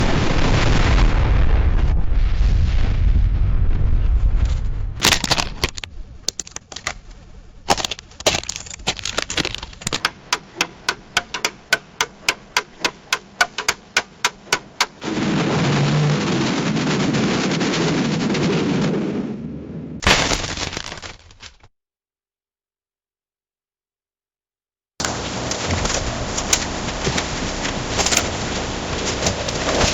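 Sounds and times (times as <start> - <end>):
sharp cracks: 5.0 - 18.9, 20.0 - 21.7.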